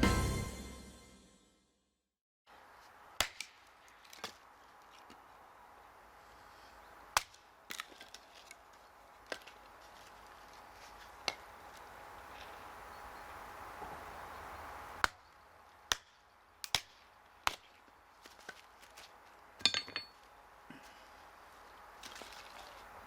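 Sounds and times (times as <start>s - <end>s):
hatchet chopping wood: 3.2s - 4.4s, 7.2s - 8.0s, 15.0s - 15.2s, 15.9s - 17.7s.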